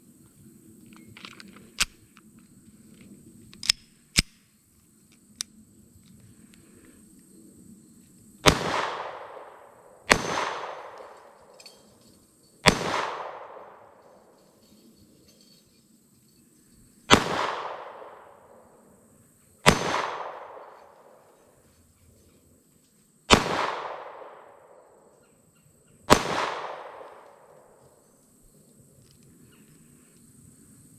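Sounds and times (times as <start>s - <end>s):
pistol mechanical clicks: 1.0s - 2.2s, 3.5s - 4.4s
pistol shots with echo: 8.4s - 11.6s, 12.6s - 14.0s, 17.1s - 18.6s, 19.6s - 21.2s, 23.3s - 24.8s, 26.1s - 27.8s.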